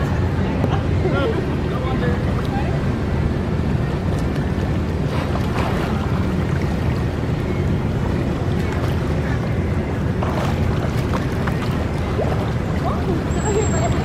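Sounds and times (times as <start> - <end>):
open water washing: 0.0 - 14.0.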